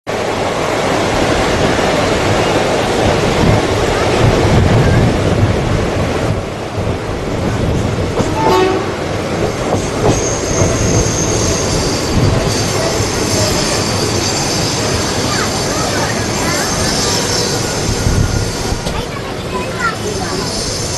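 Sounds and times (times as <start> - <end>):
train wheels rushing on rails: 0.1 - 20.9
rail-joint clatter: 7.4 - 20.9
thin high squeal: 10.1 - 18.8.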